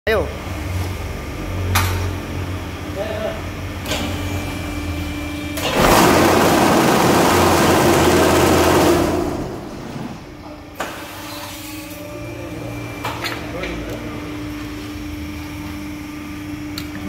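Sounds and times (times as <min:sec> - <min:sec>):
vibrator motor running: 0:02.2 - 0:10.4.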